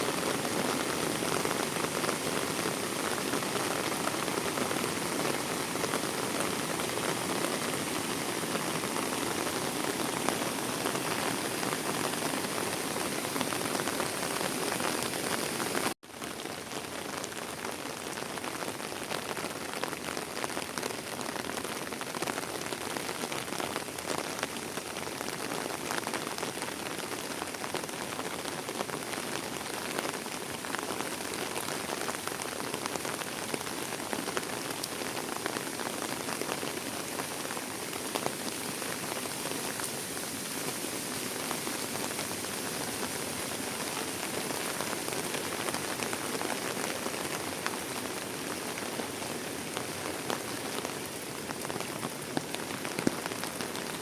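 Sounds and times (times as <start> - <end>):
heavy rain falling: 0.0 - 54.0
raindrops ticking close by: 27.6 - 54.0.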